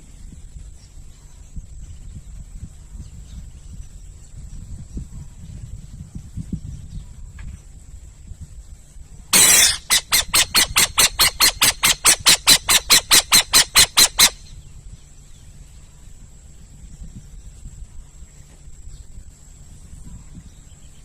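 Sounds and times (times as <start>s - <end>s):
owl screeching: 9.4s - 14.5s.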